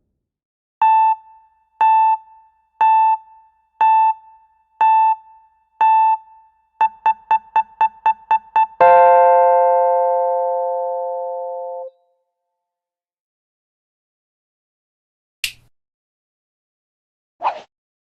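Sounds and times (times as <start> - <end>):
electronic countdown beeps: 0.8 - 9.2.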